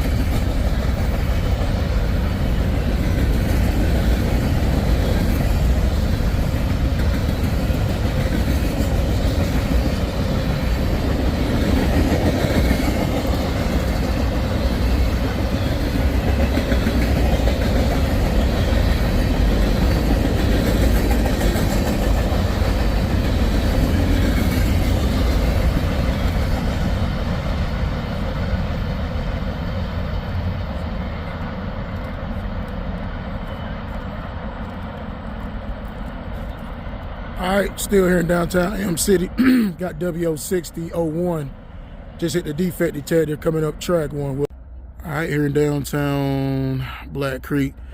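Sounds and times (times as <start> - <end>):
wheels clacking over rail joints: 0.0 - 28.6
freight train rumbling past: 0.0 - 47.9.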